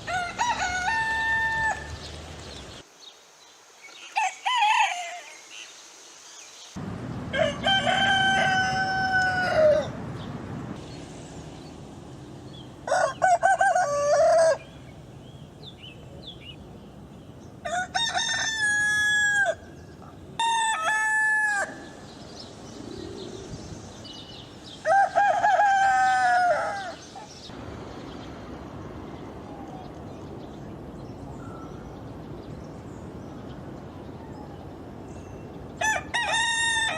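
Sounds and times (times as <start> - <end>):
roosters crowing: 0.0 - 2.2, 4.1 - 5.4, 7.3 - 10.0, 12.8 - 14.9, 17.6 - 19.8, 20.4 - 22.2, 24.6 - 27.2, 35.7 - 36.9.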